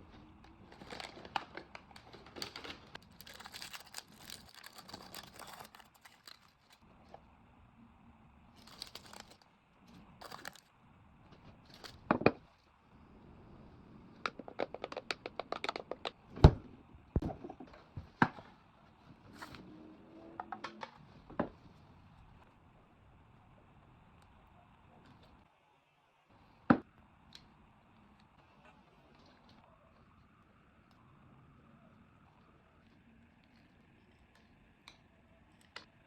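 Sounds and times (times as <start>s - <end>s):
crinkling and rustling: 0.0s - 7.2s, 8.6s - 10.7s, 11.3s - 12.5s.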